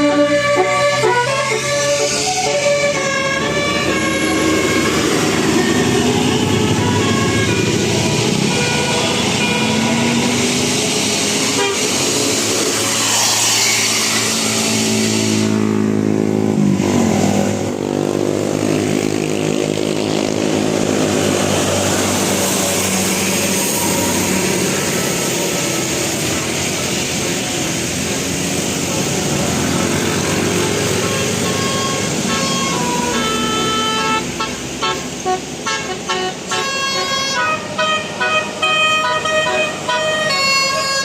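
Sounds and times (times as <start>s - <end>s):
musical bus horn: 0.0s - 13.3s, 30.2s - 41.0s
vehicle noise: 0.0s - 41.0s.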